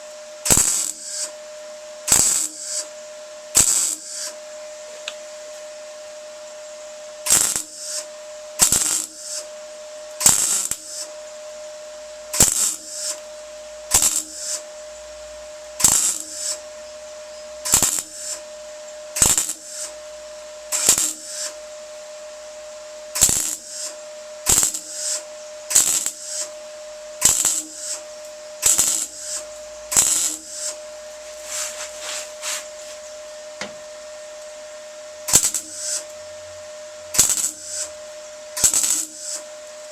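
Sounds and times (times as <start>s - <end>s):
welder hum: 0.0s - 39.9s
welder crackling bursts: 0.4s - 1.4s, 2.1s - 2.9s, 3.6s - 4.3s, 7.2s - 9.5s, 10.2s - 11.1s, 12.3s - 13.2s, 13.9s - 14.6s, 15.8s - 16.7s, 17.6s - 18.5s, 19.2s - 20.0s, 20.7s - 21.6s, 23.1s - 26.6s, 27.2s - 33.1s, 35.3s - 36.1s, 37.1s - 38.0s, 38.6s - 39.5s.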